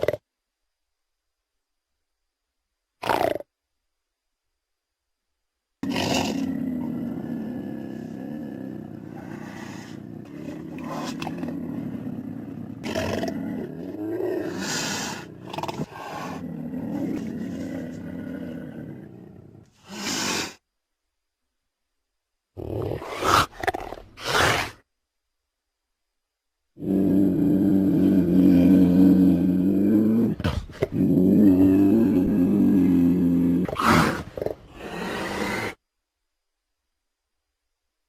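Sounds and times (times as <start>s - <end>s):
creature roaring: 5.8s - 20.3s, 26.8s - 35.8s.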